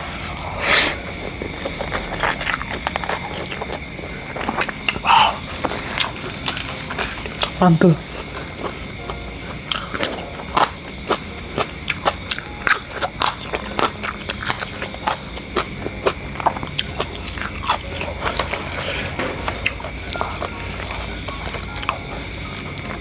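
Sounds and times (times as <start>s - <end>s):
chewing crunches: 0.0s - 23.0s
night insects chirring: 0.0s - 23.0s.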